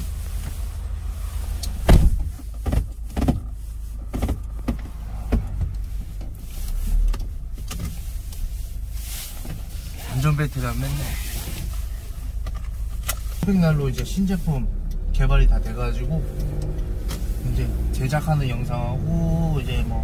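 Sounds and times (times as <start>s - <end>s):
car engine rumble inside cabin: 0.0s - 20.0s
knocks and clunks: 1.6s - 6.4s.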